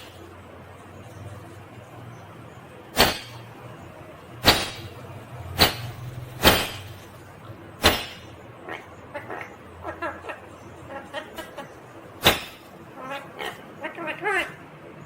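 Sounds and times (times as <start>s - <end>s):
parakeet squawking: 7.8s - 14.7s.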